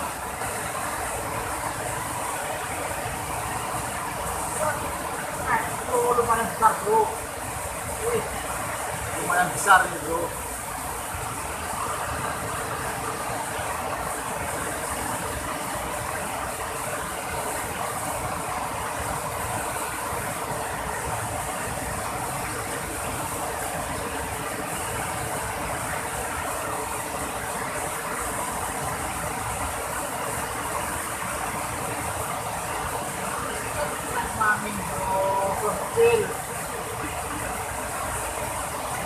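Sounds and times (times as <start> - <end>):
river water rushing: 0.0 - 39.0.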